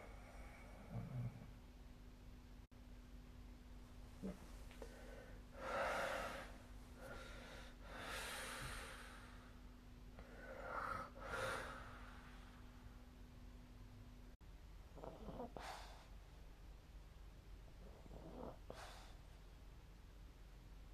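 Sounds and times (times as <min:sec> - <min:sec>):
soft puffing snores: 0:00.0 - 0:01.6, 0:15.0 - 0:16.1, 0:17.8 - 0:19.2
faint steady hum: 0:00.0 - 0:20.9.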